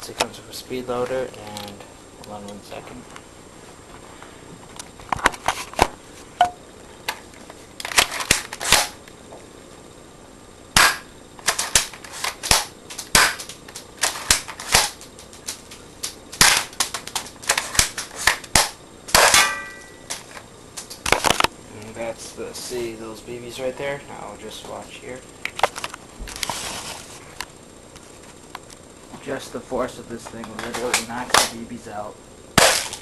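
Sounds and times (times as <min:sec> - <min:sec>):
toy shotgun plastic clacks and snaps: 0:07.8 - 0:09.0, 0:10.8 - 0:19.4, 0:30.3 - 0:31.6.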